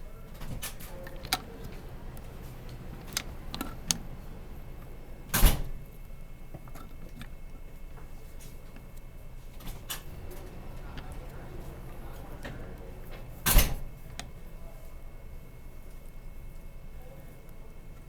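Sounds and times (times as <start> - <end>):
light metallic clicks: 0.6 - 5.6.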